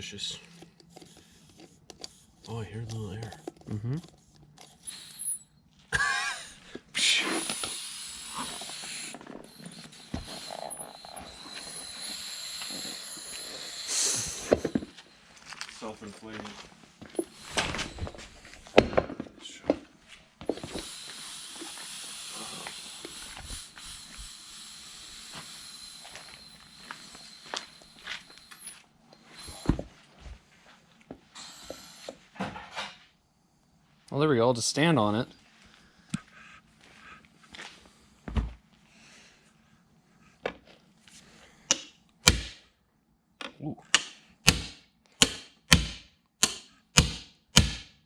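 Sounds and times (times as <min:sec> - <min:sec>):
air hissing out of a tire: 0:04.8 - 0:05.5, 0:07.0 - 0:15.2, 0:17.2 - 0:18.6, 0:20.5 - 0:29.9, 0:31.3 - 0:32.5
faint shuffling: 0:15.2 - 0:17.2.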